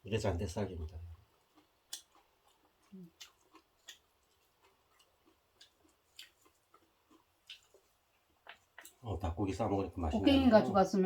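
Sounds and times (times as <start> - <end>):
person chewing food: 0.6 - 9.2.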